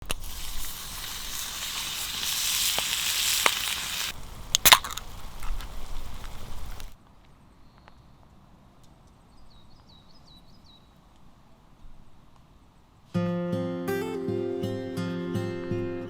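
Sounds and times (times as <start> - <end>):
food sizzling in a frying pan: 0.0 - 7.0.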